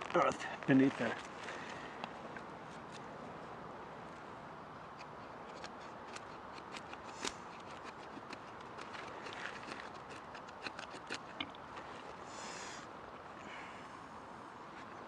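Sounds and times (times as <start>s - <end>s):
dry sticks clicking and knocking: 4.9s - 12.2s.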